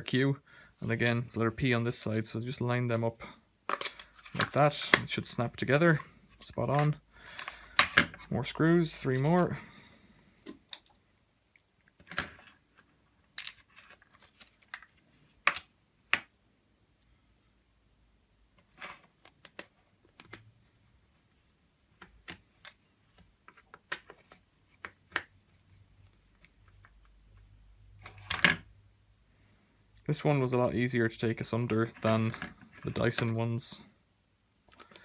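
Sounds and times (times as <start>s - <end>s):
plastic parts clicking: 3.7s - 5.2s, 5.9s - 8.2s.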